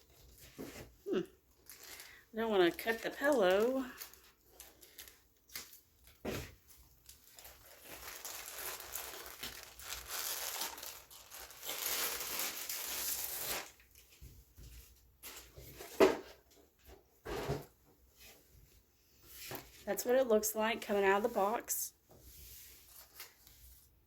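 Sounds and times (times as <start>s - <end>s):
packaging tearing and crinkling: 7.0s - 14.0s.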